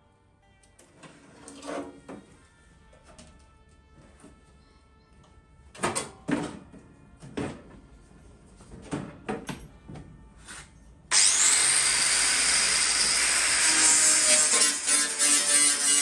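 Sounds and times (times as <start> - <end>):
angle grinder grinding metal: 11.1 - 16.0.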